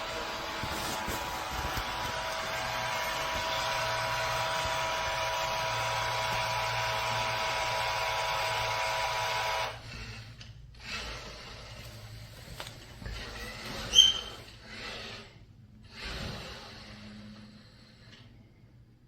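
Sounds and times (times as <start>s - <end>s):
robot vacuum motor whirring: 0.0s - 9.9s.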